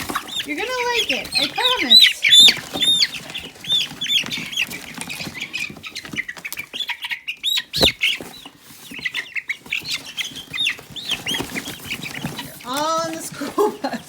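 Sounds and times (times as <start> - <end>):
chicks peeping: 0.0 - 14.0
thump: 7.8 - 8.0.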